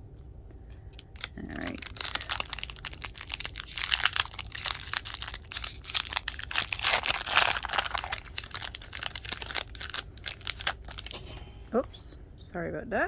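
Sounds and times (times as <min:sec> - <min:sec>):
foil wrapper crinkling: 0:00.8 - 0:11.2.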